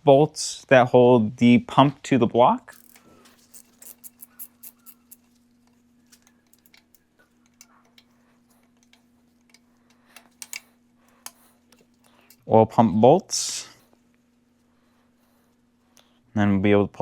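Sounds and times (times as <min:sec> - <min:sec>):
faint steady hum: 0:00.0 - 0:17.0
ratchet wrench clicking: 0:02.7 - 0:05.2, 0:06.2 - 0:08.1, 0:10.2 - 0:10.6.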